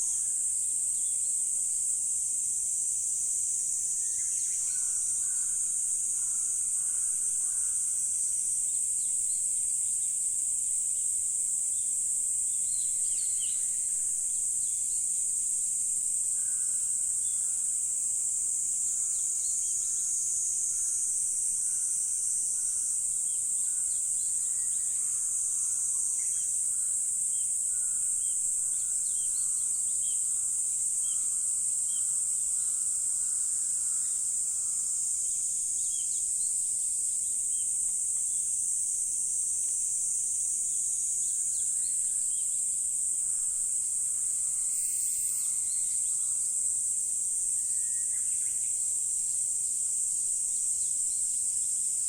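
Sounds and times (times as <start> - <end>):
high-pitched insect chorus: 0.0 - 52.0
faint bird chirps: 41.2 - 46.7, 47.5 - 48.8.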